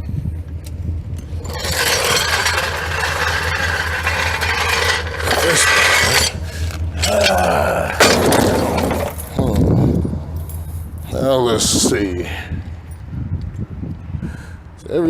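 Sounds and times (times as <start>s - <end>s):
steady low hum: 0.0s - 15.0s
scraping and rubbing noises: 1.2s - 12.0s.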